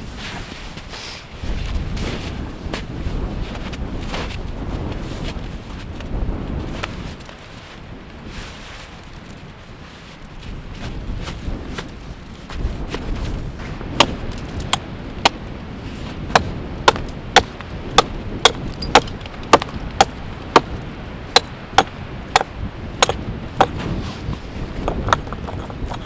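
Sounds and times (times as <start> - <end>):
sharp chopping knocks: 13.6 - 15.4, 16.4 - 24.0.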